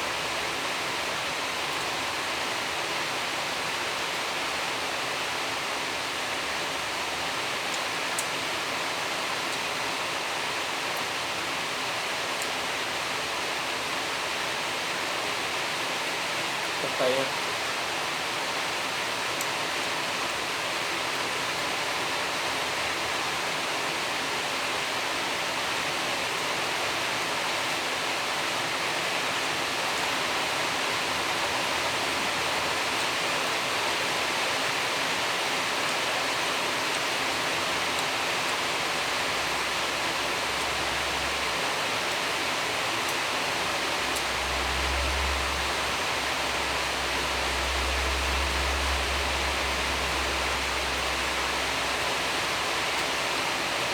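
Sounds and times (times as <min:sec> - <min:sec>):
steady background hiss: 0:30.0 - 0:53.9
low rumble: 0:43.8 - 0:52.7.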